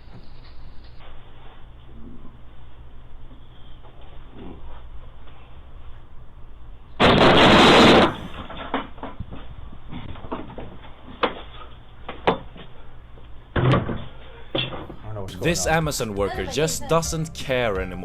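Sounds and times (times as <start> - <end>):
harsh burst of noise: 7.0 - 8.5.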